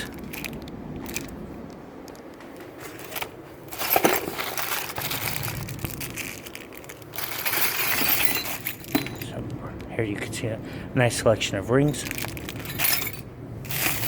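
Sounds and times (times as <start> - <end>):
packaging crinkling and rustling: 0.0 - 1.4, 2.1 - 9.3, 11.8 - 14.0.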